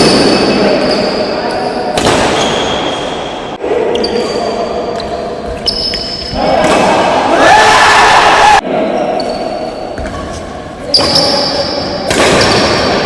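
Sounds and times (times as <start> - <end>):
shoes squeaking on court: 0.0 - 6.4, 9.1 - 13.0
crowd cheering: 6.4 - 8.6
rackets striking shuttlecock: 9.2 - 13.0.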